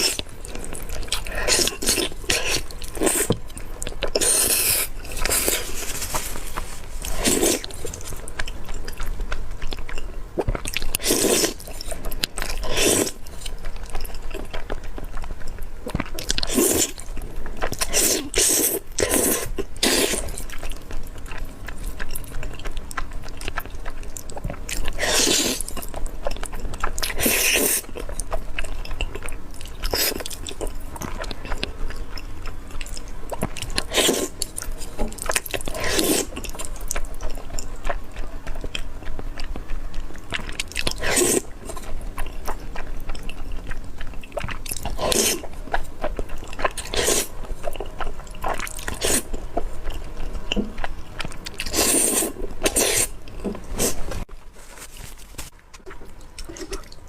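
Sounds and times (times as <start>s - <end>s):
chewing: 0.0s - 57.0s
wet noodle slurps: 4.1s - 8.2s, 12.6s - 13.2s, 16.5s - 17.0s, 17.9s - 20.4s, 25.0s - 25.7s, 27.1s - 27.9s, 33.8s - 34.4s, 35.7s - 36.3s, 41.0s - 41.8s, 44.9s - 45.4s, 46.8s - 47.3s, 48.5s - 49.3s, 51.6s - 54.3s.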